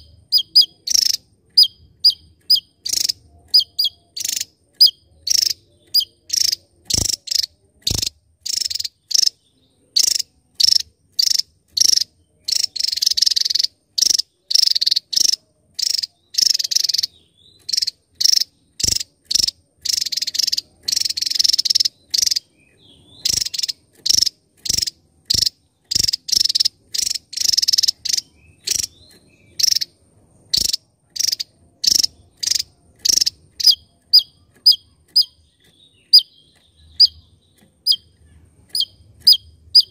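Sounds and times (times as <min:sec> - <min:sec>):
bird singing high-pitched bursts: 0:00.0 - 0:39.9.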